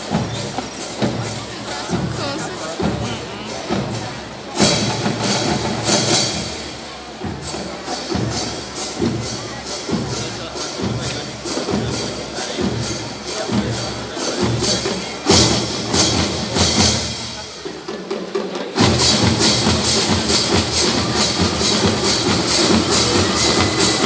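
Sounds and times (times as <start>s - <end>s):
marching band playing: 0.0s - 24.0s
steady percussion beat: 0.0s - 24.0s
loud drum hit: 18.8s - 24.0s.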